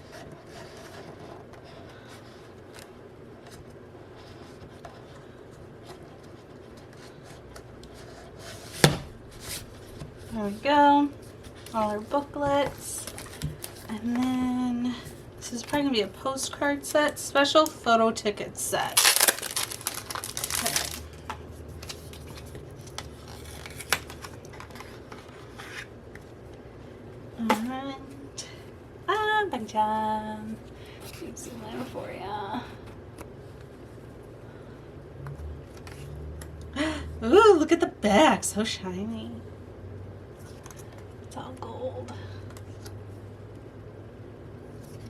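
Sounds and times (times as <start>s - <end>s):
paper rustling and scraping: 18.9s - 25.9s.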